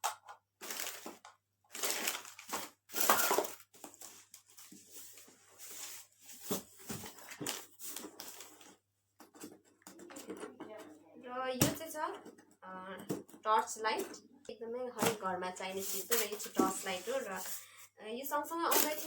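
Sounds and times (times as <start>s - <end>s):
packaging crinkling and rustling: 0.0s - 8.8s, 18.7s - 19.0s.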